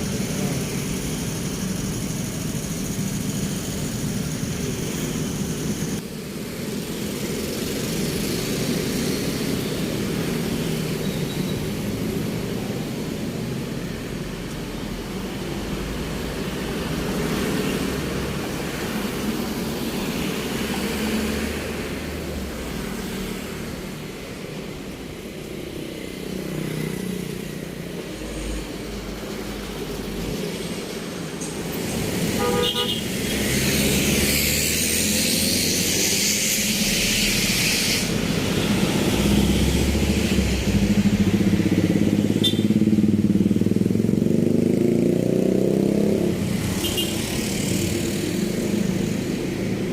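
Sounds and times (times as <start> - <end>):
passing vehicle hiss: 0.0 - 49.9
traffic rumble: 0.0 - 49.9
car horn toot: 32.4 - 33.0, 42.4 - 42.7.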